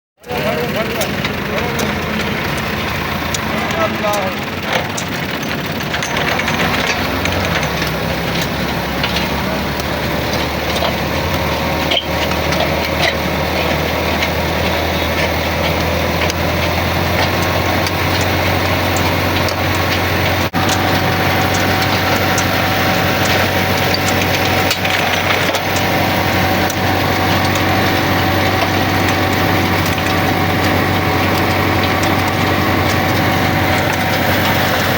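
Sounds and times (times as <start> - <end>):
steady whine: 0.2 - 34.9
drill motor hum: 0.3 - 34.9
metal chips crackling: 0.4 - 34.9.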